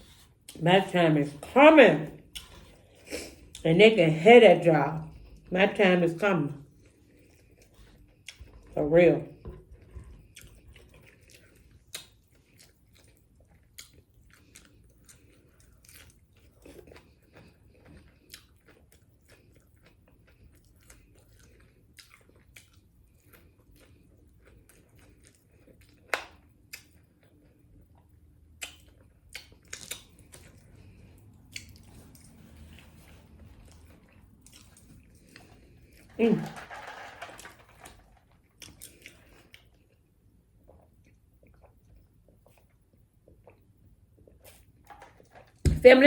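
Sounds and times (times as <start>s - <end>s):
person chewing and biting: 9.7s - 36.0s.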